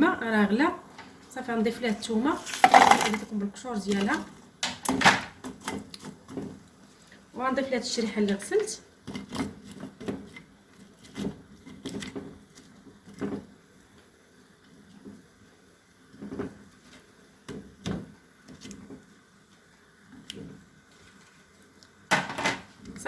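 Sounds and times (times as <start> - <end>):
figs dropping into boiling water: 2.2 - 6.7, 21.5 - 23.0.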